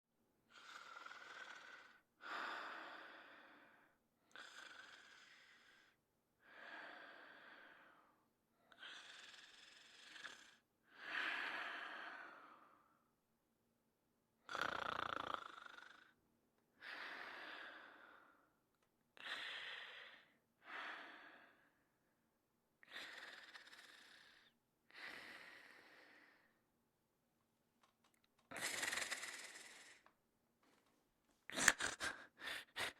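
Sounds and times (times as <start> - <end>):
man snoring: 14.5 - 16.1.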